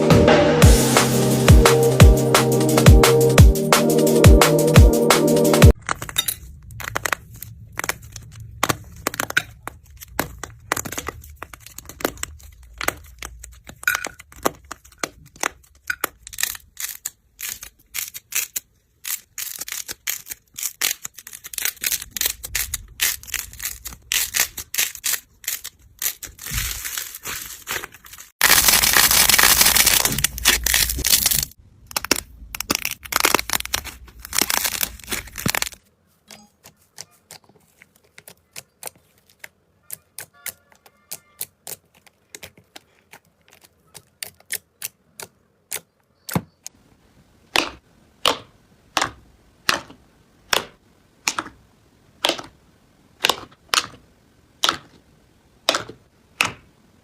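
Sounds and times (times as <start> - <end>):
slime crackling and popping: 5.7 - 35.8.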